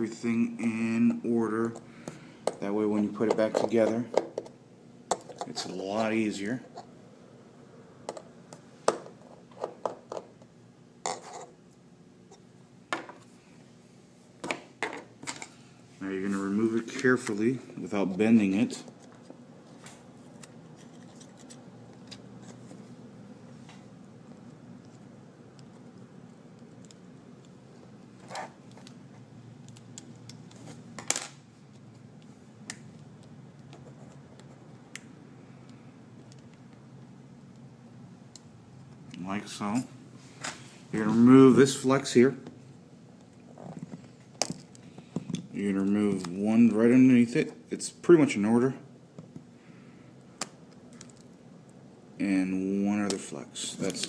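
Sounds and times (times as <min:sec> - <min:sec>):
low steady hum: 0:00.0 - 0:54.0.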